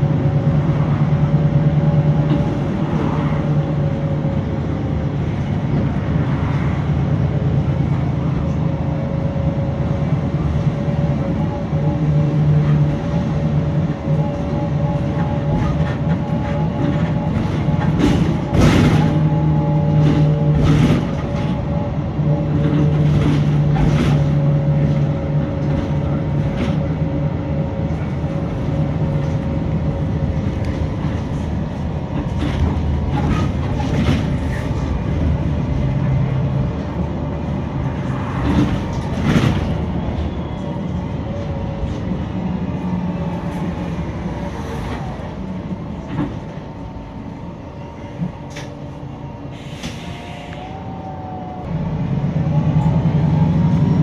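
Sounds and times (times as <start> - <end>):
bus diesel engine drone: 0.0 - 54.0
bus body knocks and rattles: 14.8 - 21.8, 22.6 - 27.0, 30.1 - 35.8.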